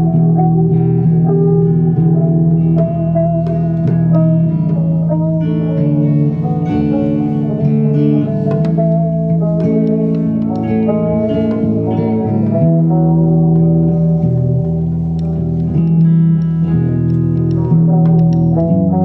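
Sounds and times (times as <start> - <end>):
bass line: 0.0 - 19.0
guitar strummed chords: 0.0 - 19.0.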